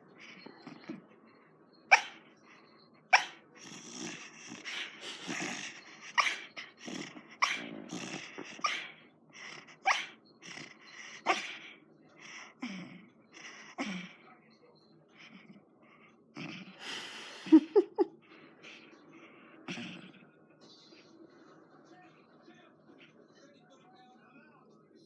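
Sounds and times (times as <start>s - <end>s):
dog snoring: 0.2s - 1.1s, 1.9s - 2.2s, 3.1s - 14.2s, 15.2s - 20.3s.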